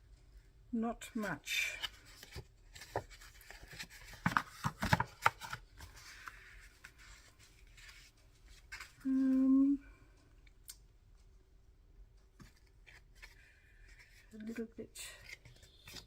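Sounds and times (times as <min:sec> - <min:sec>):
woman humming: 0:09.1 - 0:09.8.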